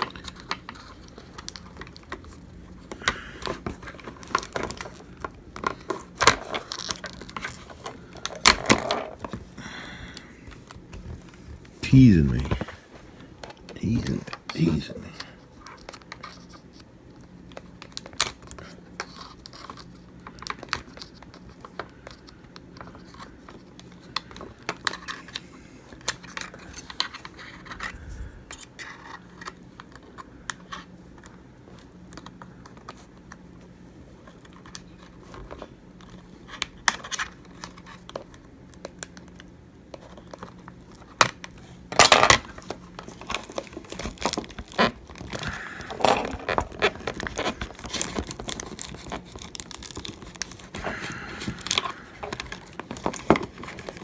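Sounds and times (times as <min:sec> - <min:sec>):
clicks scrapes and crinkles: 0:00.0 - 0:09.5, 0:42.5 - 0:54.0.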